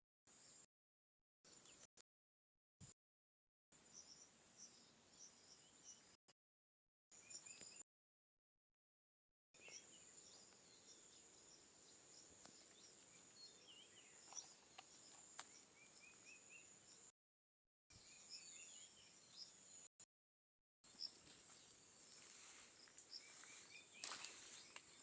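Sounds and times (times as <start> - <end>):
faint bird chirps: 7.1 - 7.8, 9.6 - 17.1, 17.9 - 19.9, 20.9 - 25.0.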